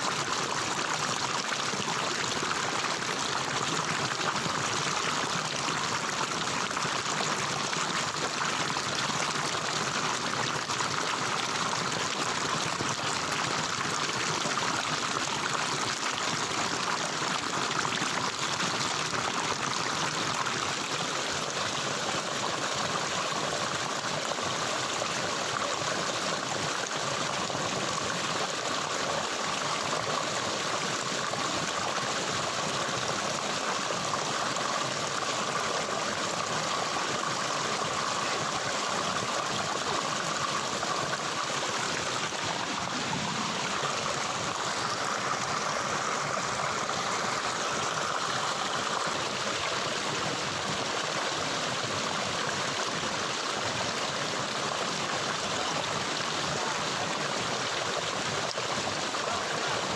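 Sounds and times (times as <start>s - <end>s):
stream flowing: 0.0s - 59.9s.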